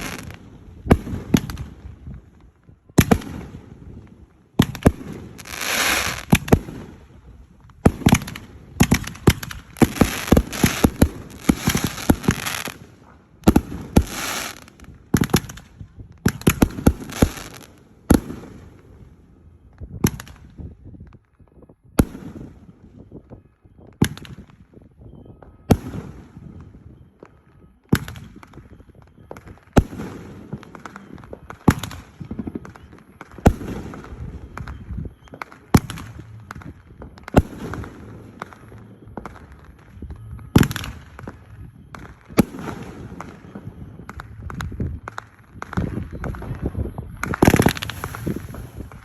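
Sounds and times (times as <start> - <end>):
fireworks bangs: 0.0 - 19.2, 24.0 - 49.0
crackle of small pops: 30.7 - 49.0.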